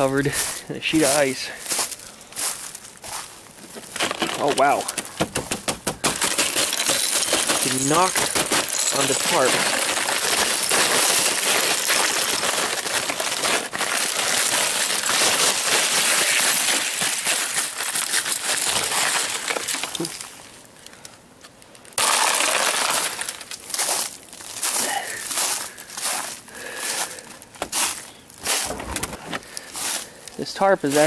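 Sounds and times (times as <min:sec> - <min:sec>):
ice crust crackling on tarp: 0:03.8 - 0:04.9, 0:06.2 - 0:20.6, 0:22.0 - 0:28.7, 0:29.4 - 0:31.0.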